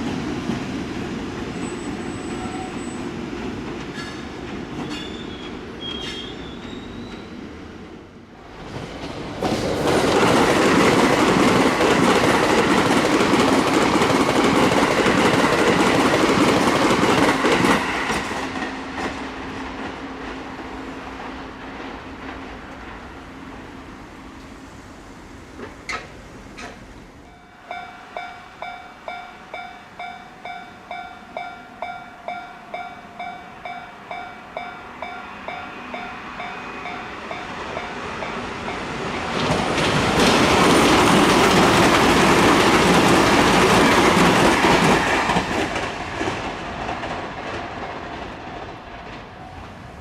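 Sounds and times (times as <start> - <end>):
train wheels clacking on rails: 0.0 - 7.4, 8.5 - 23.2, 27.6 - 50.0
level crossing warning bell: 27.3 - 38.9.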